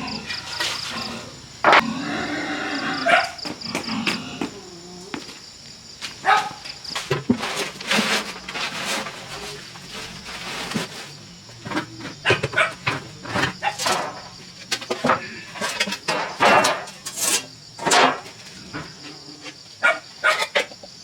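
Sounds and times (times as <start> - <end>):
insects chirping: 0.0 - 21.0
knocks and clatter of work: 6.0 - 20.8.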